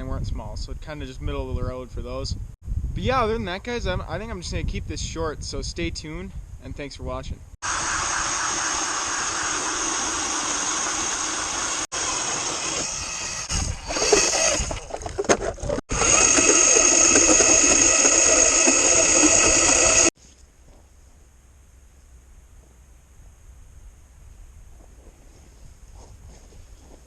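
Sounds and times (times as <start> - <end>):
power ice auger boring: 7.6 - 20.2.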